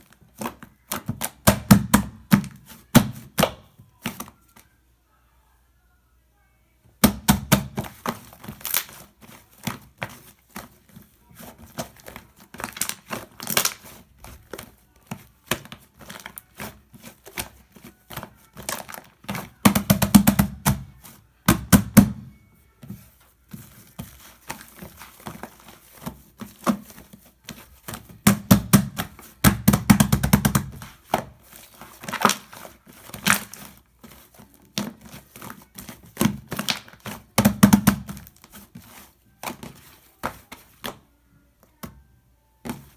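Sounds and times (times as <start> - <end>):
hands squishing shaving foam: 7.0 - 22.0, 23.0 - 41.0.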